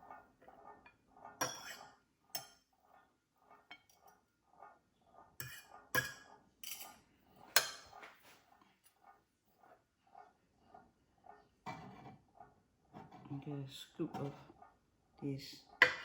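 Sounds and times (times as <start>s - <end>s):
metal spoon clinking on plate: 1.4s - 2.6s, 5.4s - 7.0s.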